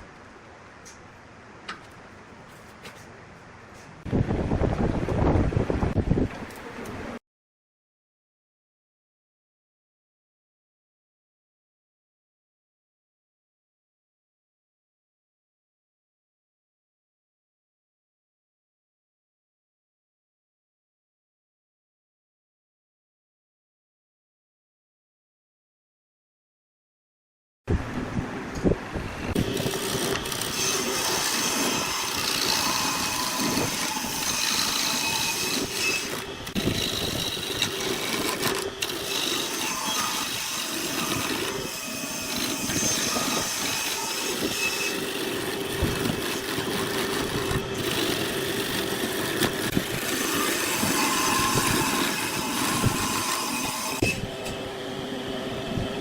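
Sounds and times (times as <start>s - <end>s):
wood lathe humming: 29.5s - 42.8s.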